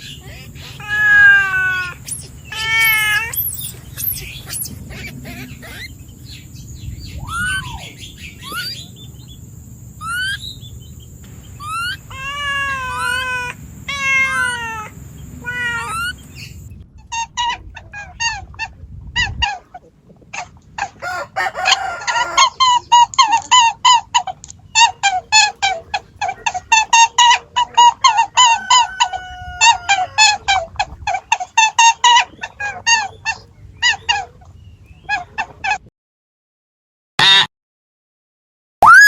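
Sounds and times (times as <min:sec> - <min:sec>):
whistled bird calls: 0:00.0 - 0:09.4, 0:10.0 - 0:13.5, 0:14.3 - 0:17.2
bird chattering: 0:00.0 - 0:18.4.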